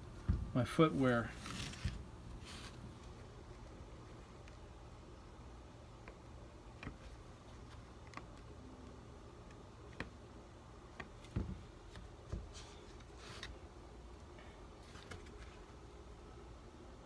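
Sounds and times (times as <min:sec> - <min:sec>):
soft thumps: 0:00.2 - 0:00.6.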